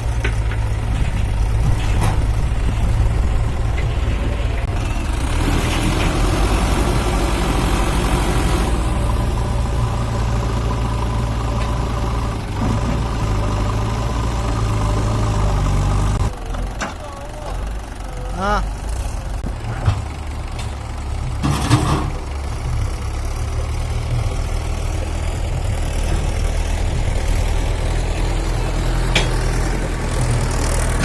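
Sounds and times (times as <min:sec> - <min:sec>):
heavy diesel engine running: 0:00.0 - 0:31.0.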